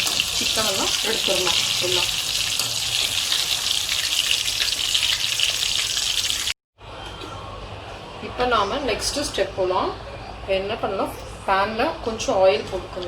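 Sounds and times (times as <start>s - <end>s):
chicken deep-frying in oil: 0.0s - 6.6s.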